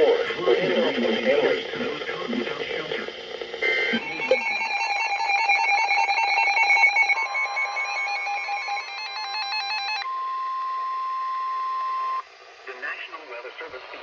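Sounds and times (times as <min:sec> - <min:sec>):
alternating electronic data tones: 0:03.9 - 0:10.1
steady alert tone: 0:04.0 - 0:10.0.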